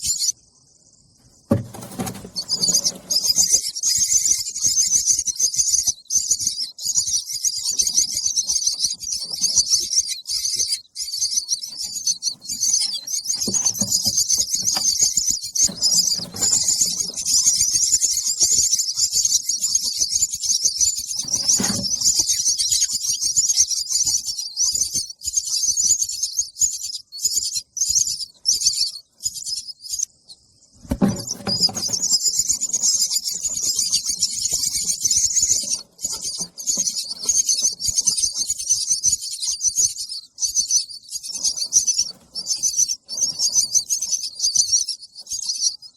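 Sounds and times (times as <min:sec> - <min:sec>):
baby bird chirping: 0:00.0 - 0:00.4, 0:01.5 - 0:30.1, 0:30.8 - 0:45.9.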